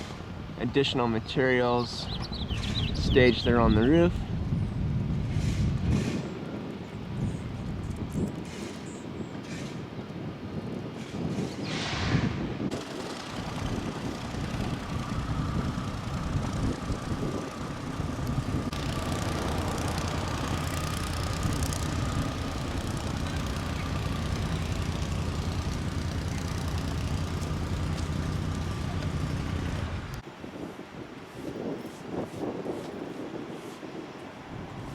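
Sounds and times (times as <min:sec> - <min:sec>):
brief whoosh: 0:11.6 - 0:12.5
engine drone: 0:11.7 - 0:30.2.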